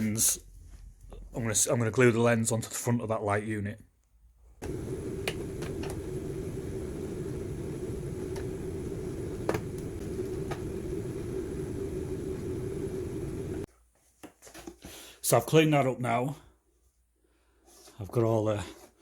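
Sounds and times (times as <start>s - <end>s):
electric motor hum: 4.6s - 13.7s
faint high whine: 4.6s - 13.7s.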